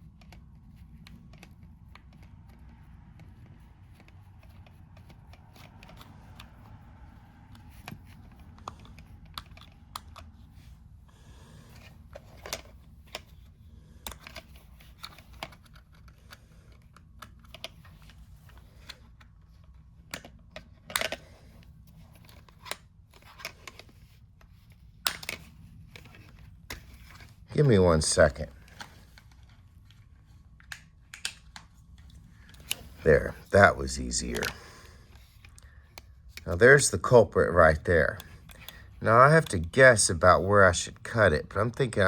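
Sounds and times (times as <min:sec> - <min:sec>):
clicks and taps of plastic parts: 0:00.0 - 0:10.7, 0:11.7 - 0:27.3, 0:30.6 - 0:33.3
low steady hum: 0:00.0 - 0:42.0.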